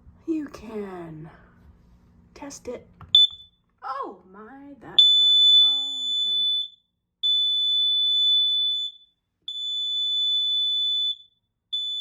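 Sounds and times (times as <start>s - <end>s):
high-pitched alarm beeps: 5.0s - 12.0s.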